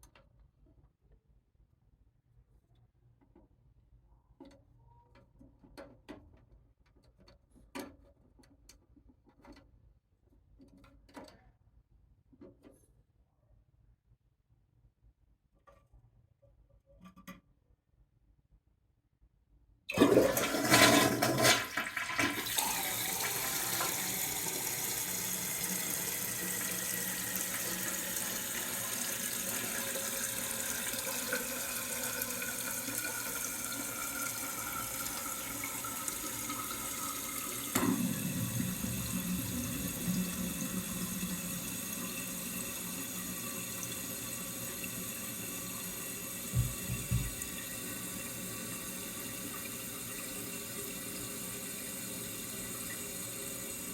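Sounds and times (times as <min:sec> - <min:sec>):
tank refilling hiss: 0:19.9 - 0:51.7
toilet flushing: 0:19.9 - 0:53.9
low thuds: 0:46.6 - 0:47.5.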